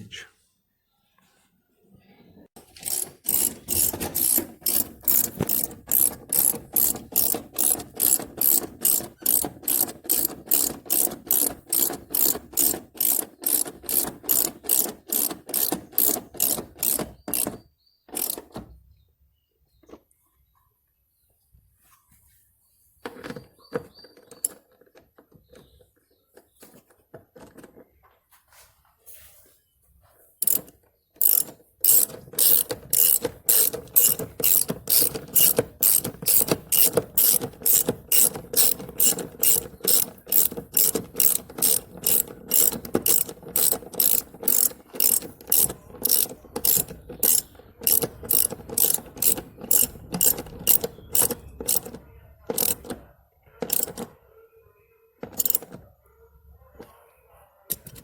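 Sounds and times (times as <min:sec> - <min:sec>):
ratchet wrench clicking: 0:02.7 - 0:18.5, 0:30.4 - 0:52.0, 0:52.6 - 0:52.9, 0:53.7 - 0:54.0, 0:55.4 - 0:55.7, 0:57.7 - 0:58.0.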